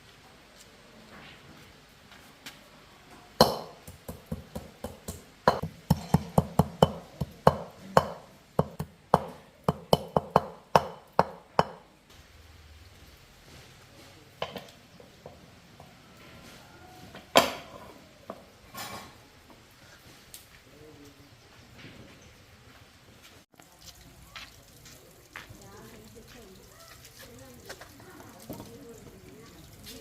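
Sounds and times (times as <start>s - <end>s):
hammer striking: 3.4s - 11.9s.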